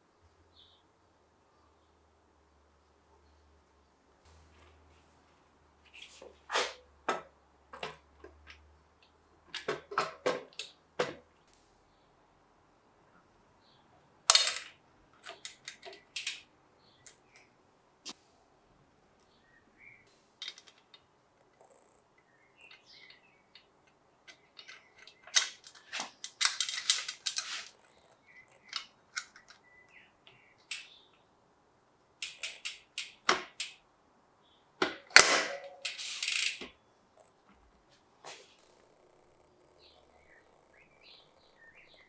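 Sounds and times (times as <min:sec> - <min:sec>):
metallic clicks of bike tools: 0:14.3 - 0:17.5, 0:20.4 - 0:21.0, 0:22.7 - 0:27.8, 0:28.5 - 0:29.6, 0:30.7 - 0:31.0, 0:32.2 - 0:33.8, 0:34.8 - 0:36.7.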